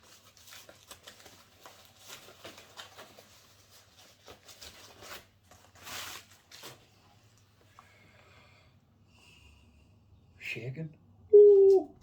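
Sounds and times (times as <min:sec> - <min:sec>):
packaging rustling: 0:00.0 - 0:07.0.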